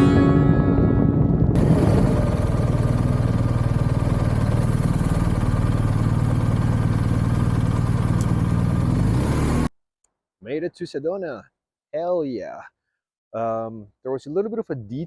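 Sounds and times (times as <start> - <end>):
motorcycle engine running: 0.0 - 9.7.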